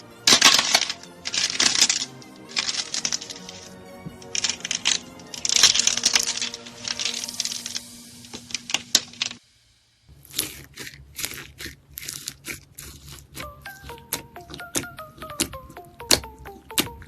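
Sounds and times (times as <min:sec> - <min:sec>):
crisp crackling clicks: 0:00.3 - 0:09.4
faint melody notes: 0:13.4 - 0:17.0.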